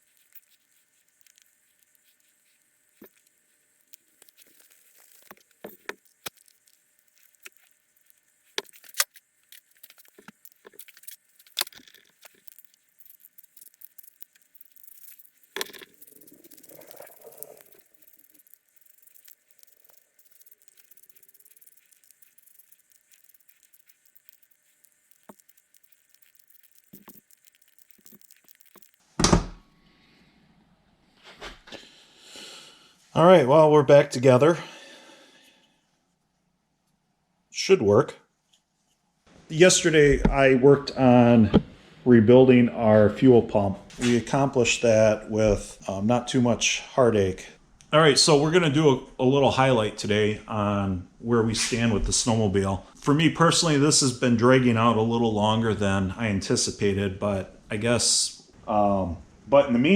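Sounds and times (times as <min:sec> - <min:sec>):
small metal parts clicking and rattling: 0:00.0 - 0:29.1.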